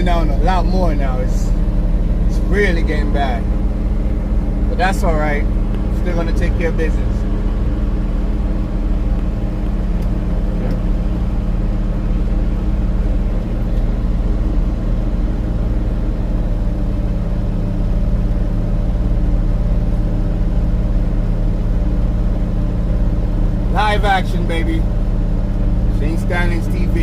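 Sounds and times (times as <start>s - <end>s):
engine droning steadily: 0.0s - 27.0s.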